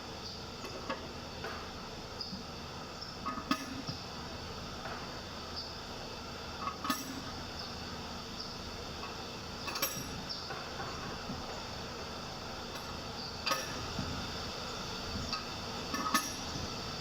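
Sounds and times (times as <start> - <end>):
steady low hum: 0.0 - 17.0
sharp metallic clinks: 9.7 - 10.3.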